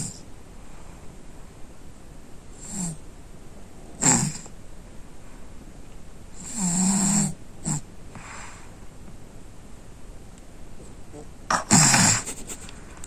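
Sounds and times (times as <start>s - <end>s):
boy snoring: 4.0s - 4.5s, 6.4s - 7.8s, 11.5s - 12.5s.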